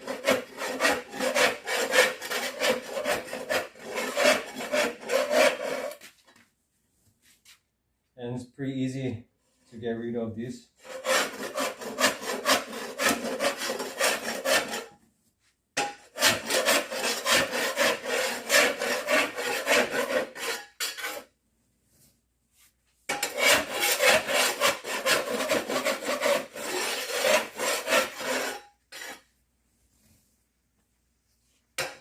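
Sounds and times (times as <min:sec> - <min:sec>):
hand scraper rasping on floor: 0:00.0 - 0:06.2, 0:10.8 - 0:15.0, 0:15.8 - 0:21.3, 0:23.1 - 0:29.3.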